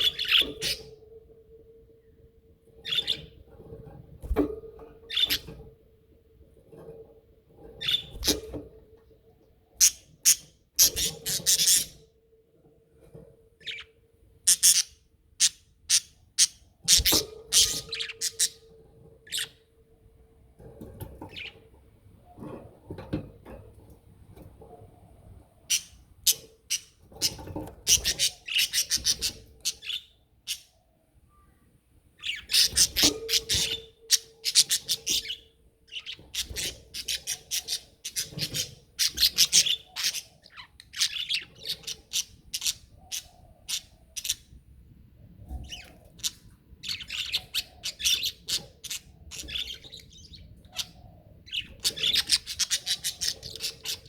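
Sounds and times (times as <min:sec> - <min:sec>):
budgerigars chattering: 0:45.7 - 0:54.0.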